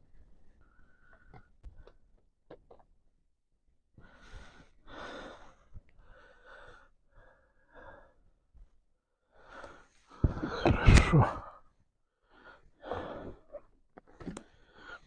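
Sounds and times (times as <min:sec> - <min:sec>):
man sighing: 0:10.4 - 0:11.5.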